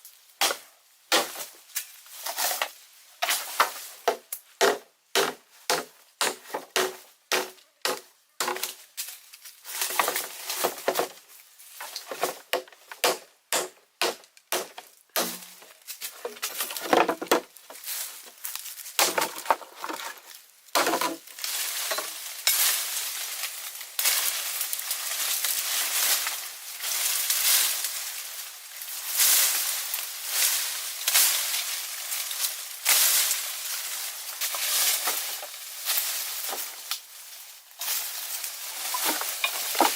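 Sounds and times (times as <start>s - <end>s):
wood being chopped: 0.4s - 1.5s, 3.6s - 8.8s, 12.1s - 15.7s, 19.0s - 19.6s, 20.7s - 21.2s, 39.0s - 39.9s
rustling and scraping: 1.3s - 4.0s, 8.7s - 13.0s, 15.4s - 39.9s.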